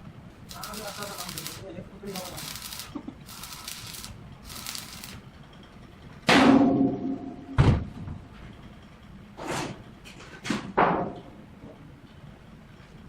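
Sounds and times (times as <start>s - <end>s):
short hissing bursts: 0.5s - 5.2s.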